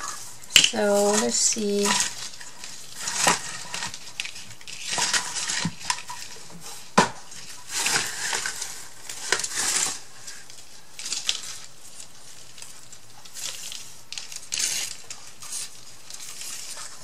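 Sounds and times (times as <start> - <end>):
rustling: 0.0 - 17.0
small hard objects clicking: 0.5 - 6.3.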